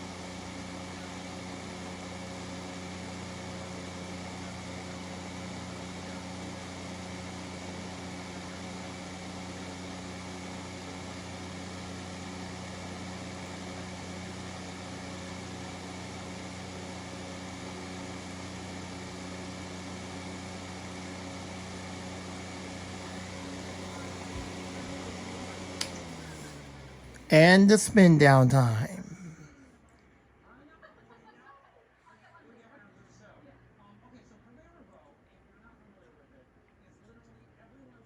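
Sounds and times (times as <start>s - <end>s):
fan motor low hum: 0.0s - 29.3s
fan air rushing: 22.8s - 28.5s.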